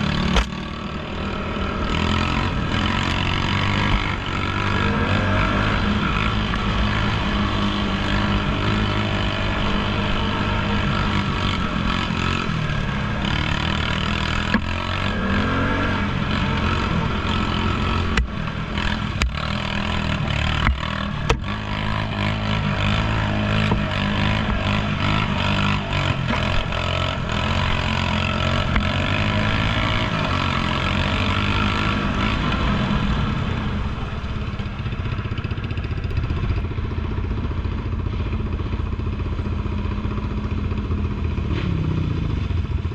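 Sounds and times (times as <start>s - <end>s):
atv engine running: 0.0s - 42.9s
sharp knocks and clatters: 0.2s - 0.6s, 20.4s - 21.6s.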